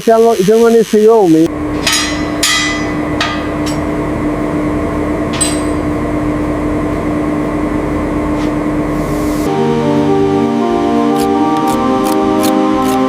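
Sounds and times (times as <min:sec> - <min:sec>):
metallic clinks of tools on metal: 0:05.3 - 0:05.8.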